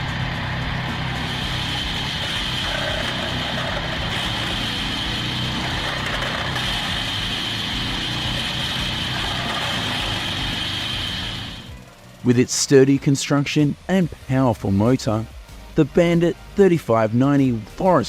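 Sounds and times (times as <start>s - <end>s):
wood chipper engine rumble: 0.0s - 12.6s
high whine: 0.0s - 15.1s.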